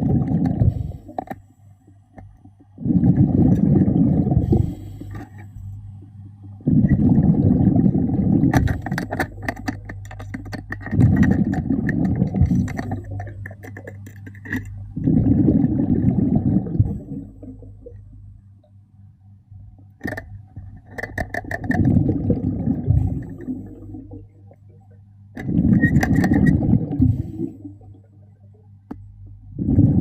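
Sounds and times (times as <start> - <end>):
underwater breath bubbling: 0.0 - 1.4, 2.7 - 18.2, 21.3 - 24.3, 25.4 - 28.2, 29.0 - 30.0
sharp clicks and crackles: 8.5 - 14.9, 20.0 - 22.2.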